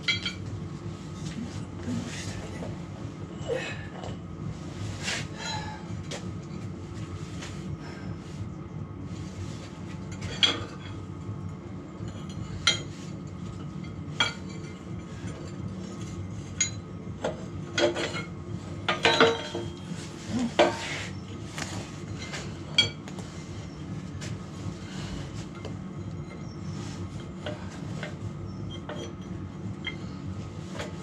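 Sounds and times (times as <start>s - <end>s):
steel parts and tools clinking: 0.0s - 0.5s, 10.0s - 11.1s, 12.0s - 21.0s, 27.2s - 30.2s
steady low hum: 0.0s - 31.0s.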